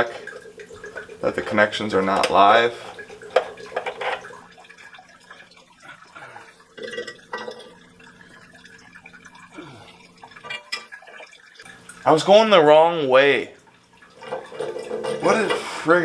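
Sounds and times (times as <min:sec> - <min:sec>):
water trickling and dripping: 0:00.0 - 0:16.0
tools clicking and knocking: 0:03.3 - 0:04.3.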